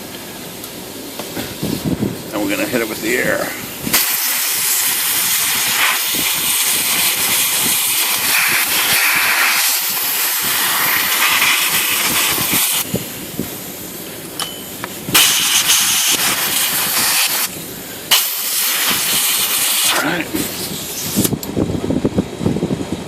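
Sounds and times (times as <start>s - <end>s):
compressed air blowgun hissing: 3.3s - 13.8s, 15.0s - 21.4s.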